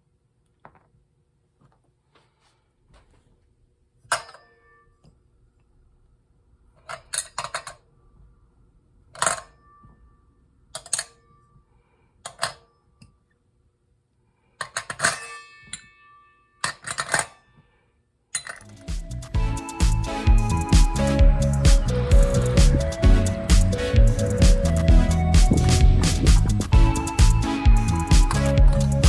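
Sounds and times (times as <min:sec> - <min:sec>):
metal parts clinking and knocking: 0:06.8 - 0:07.8, 0:14.6 - 0:15.9, 0:18.4 - 0:18.9.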